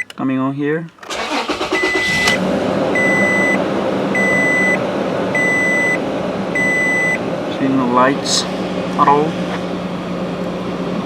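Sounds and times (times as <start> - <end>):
dashboard warning chime beeping: 0.0 - 0.2, 1.1 - 2.4, 3.0 - 6.0, 6.6 - 7.2
car engine starting and idling: 0.0 - 11.0.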